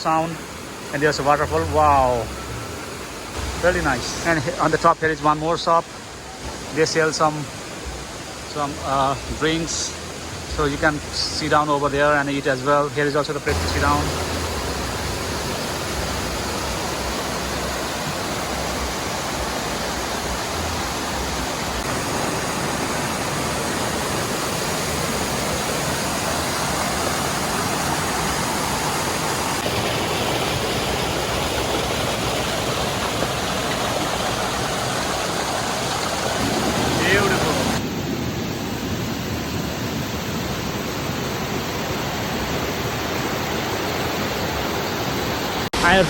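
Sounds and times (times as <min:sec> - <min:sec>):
river and waterfall rushing: 0:00.0 - 0:46.0.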